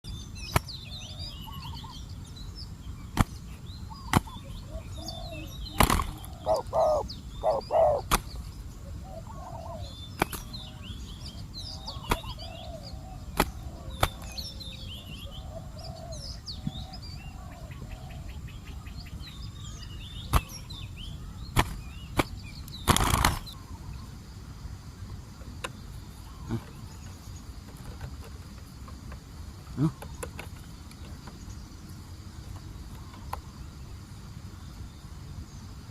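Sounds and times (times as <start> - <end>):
small birds chirping: 0.0 - 35.9
doves cooing: 3.2 - 19.2, 25.6 - 31.4, 32.5 - 33.6.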